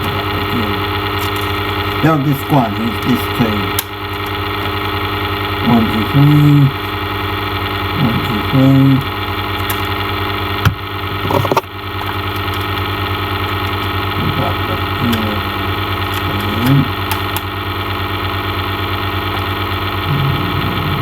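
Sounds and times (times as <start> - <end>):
mechanical hum: 0.0 - 21.0
sharp clicks: 9.5 - 18.0.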